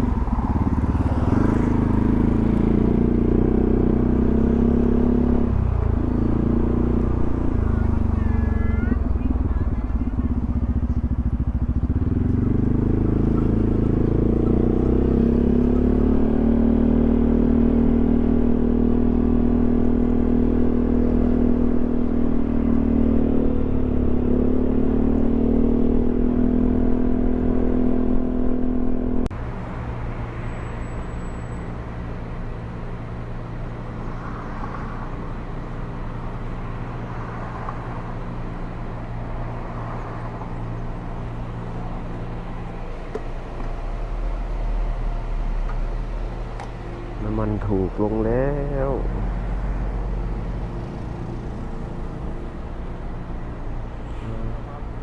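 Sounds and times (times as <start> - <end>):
scooter engine running: 0.0 - 16.1.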